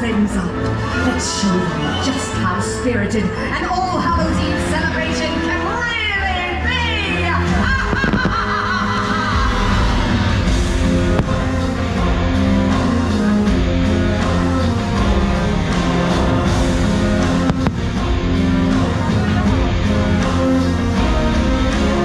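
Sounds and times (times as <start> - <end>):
rock music with guitar and bass: 7.2 - 22.0.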